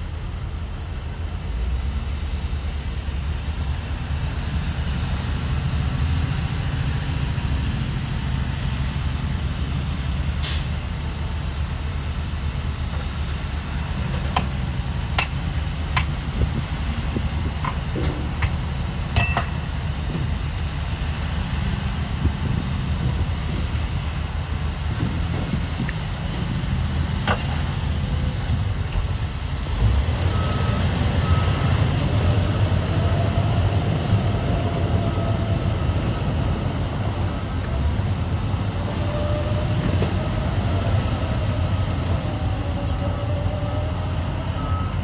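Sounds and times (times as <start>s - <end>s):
heavy diesel engines running: 0.0s - 45.0s
short hiss: 10.4s - 10.8s
sharp metal clanks: 19.1s - 19.8s.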